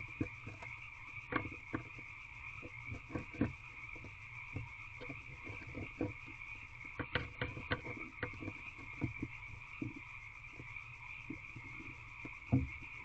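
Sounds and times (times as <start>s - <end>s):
owl scraping in wooden box: 0.0s - 13.0s
sharp knocks and scratches: 0.0s - 13.0s.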